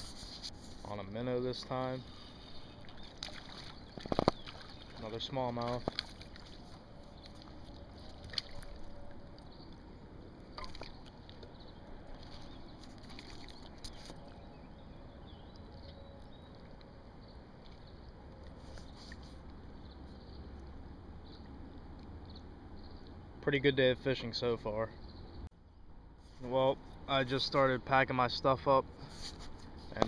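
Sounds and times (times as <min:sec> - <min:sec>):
river water lapping at shore: 0:00.0 - 0:22.2.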